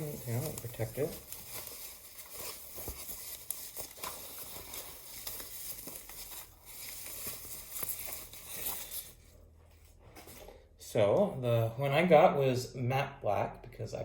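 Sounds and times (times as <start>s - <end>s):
plastic wrapping crinkling: 0.0s - 9.3s.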